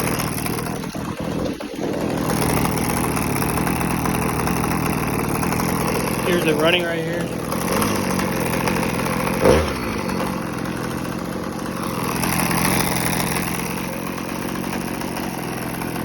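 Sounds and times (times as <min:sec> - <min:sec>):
brushcutter engine idling: 0:00.0 - 0:16.0
loud thump: 0:09.4 - 0:10.0.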